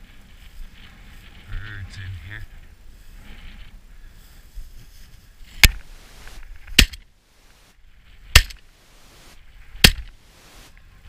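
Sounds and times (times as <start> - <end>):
shotgun shots: 6.8 - 7.0, 8.3 - 8.6, 9.8 - 10.1.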